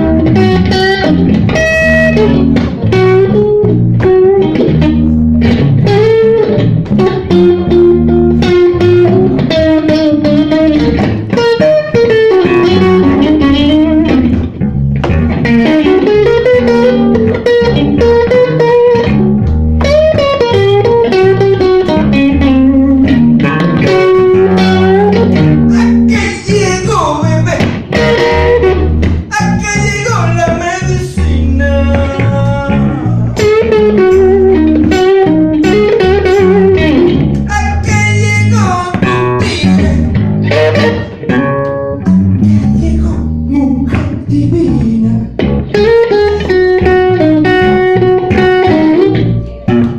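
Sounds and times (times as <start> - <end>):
blues band playing: 0.0 - 49.9
lead guitar bending and sliding: 0.0 - 49.9.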